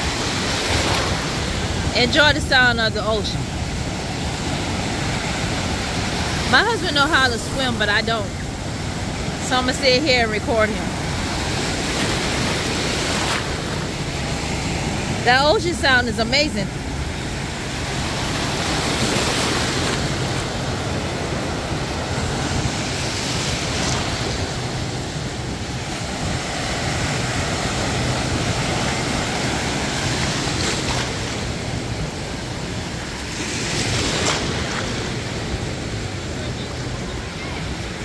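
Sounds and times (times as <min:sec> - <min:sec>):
waves breaking on beach: 0:00.0 - 0:38.0.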